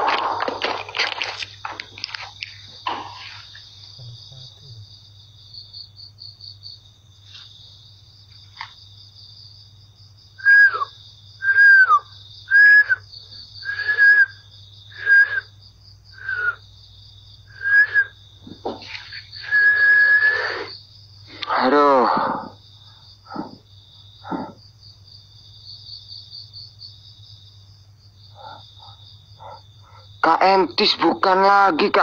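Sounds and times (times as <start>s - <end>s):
crickets trilling: 0.0s - 32.0s
high whistle-like calls: 10.4s - 13.0s, 13.6s - 14.4s, 15.0s - 15.5s, 16.2s - 16.6s, 17.5s - 18.2s, 19.4s - 20.7s.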